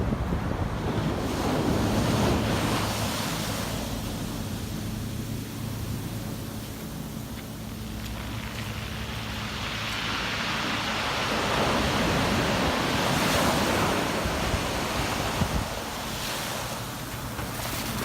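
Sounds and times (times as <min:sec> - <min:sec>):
wave breaking on sand: 0:08.0 - 0:18.0.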